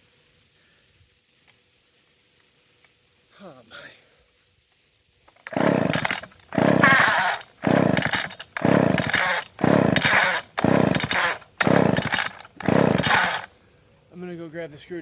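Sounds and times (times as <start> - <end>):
chainsaw recoil starter pulls: 5.3 - 13.5.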